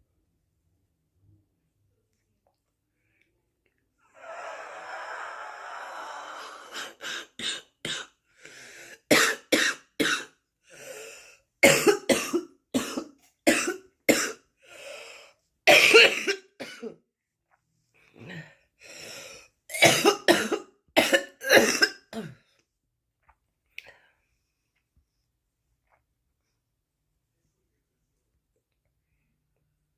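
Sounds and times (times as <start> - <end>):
woman coughing: 9.1 - 10.3, 11.6 - 14.4, 15.7 - 17.0, 19.7 - 22.4.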